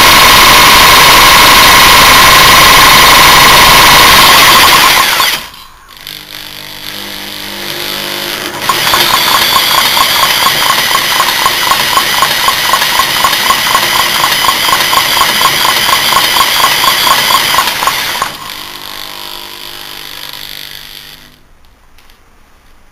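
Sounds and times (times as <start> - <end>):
single-cylinder petrol engine running: 8.6 - 18.5.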